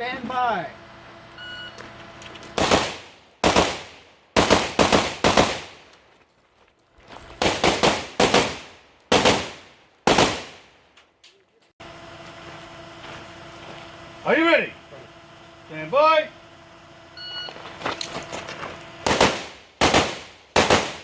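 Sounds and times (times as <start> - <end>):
shot timer beep: 1.4 - 1.8, 17.2 - 17.6
rifle shots with echo: 2.6 - 5.9, 7.4 - 10.7, 19.0 - 21.0.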